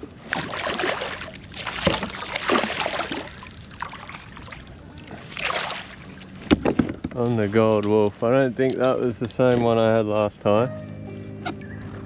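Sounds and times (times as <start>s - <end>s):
water splashing around kayak: 0.0s - 8.8s.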